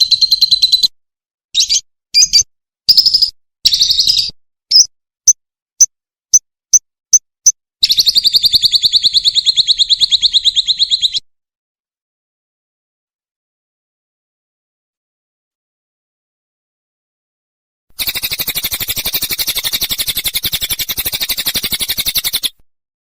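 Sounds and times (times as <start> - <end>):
fast rattling bird trill: 0.0 - 0.9, 1.6 - 4.9, 6.3 - 11.2, 18.0 - 22.6
sharp bird chips: 1.6 - 4.9, 18.0 - 22.6
fast high bird trill: 18.0 - 22.5
bird chattering bursts: 18.0 - 22.6.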